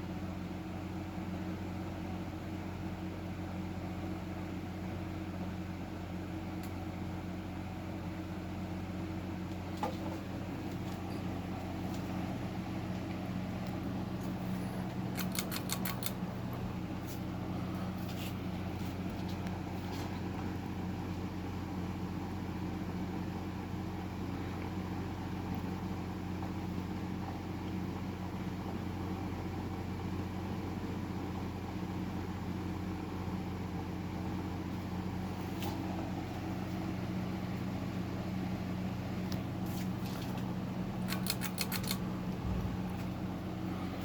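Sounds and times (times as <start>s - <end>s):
ceiling fan motor hum: 0.0s - 44.0s
clicks: 15.1s - 16.6s.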